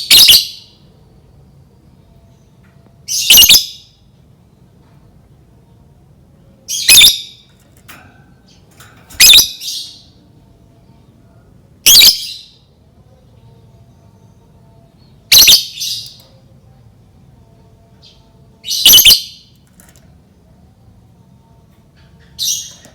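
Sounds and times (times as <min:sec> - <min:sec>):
shrill harsh bird calls: 0:03.1 - 0:03.9, 0:06.7 - 0:07.5, 0:09.2 - 0:10.1, 0:18.6 - 0:19.5.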